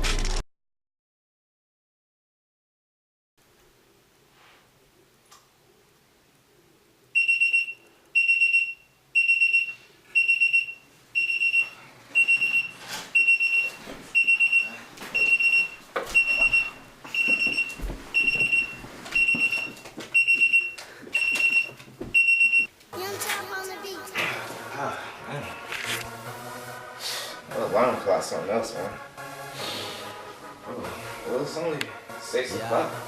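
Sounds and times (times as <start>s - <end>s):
alarm clock electronic beeps: 7.2s - 22.7s.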